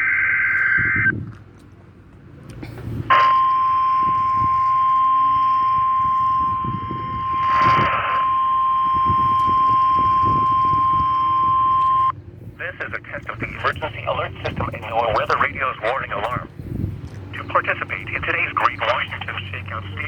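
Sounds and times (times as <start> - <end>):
data burst tones: 0.0 - 1.1, 3.1 - 12.1
weather radio alarm tone: 0.0 - 1.2, 3.1 - 16.5, 17.4 - 20.0.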